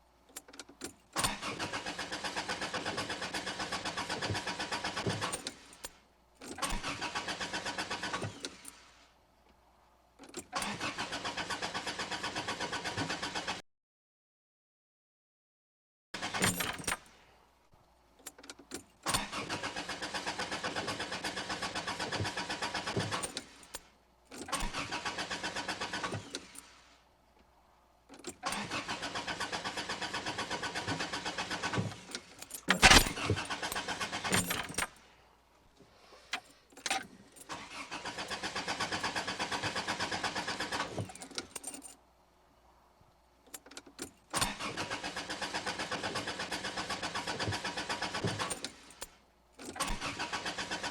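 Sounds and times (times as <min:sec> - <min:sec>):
starter motor cranking engine: 0:01.2 - 0:05.6, 0:06.5 - 0:08.6, 0:10.5 - 0:13.6, 0:19.0 - 0:23.6, 0:24.4 - 0:26.5, 0:28.4 - 0:34.9, 0:37.5 - 0:41.4, 0:44.3 - 0:48.9, 0:49.6 - 0:50.9.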